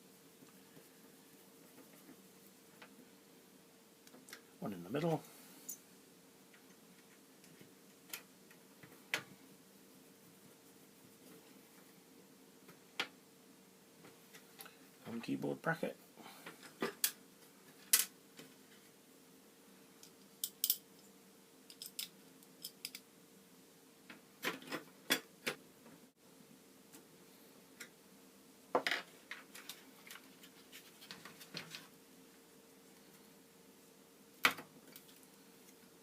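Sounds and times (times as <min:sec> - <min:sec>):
faint steady hum: 0:00.0 - 0:36.0
small parts clicking and clinking: 0:20.0 - 0:21.1, 0:21.7 - 0:23.0.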